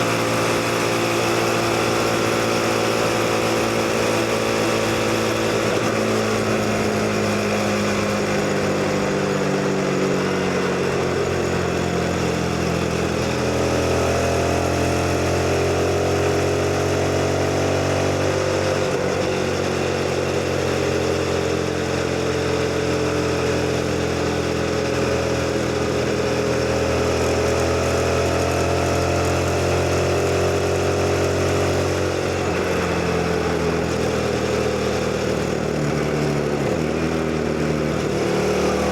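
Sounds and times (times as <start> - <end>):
motorcycle engine accelerating: 0.0 - 38.9.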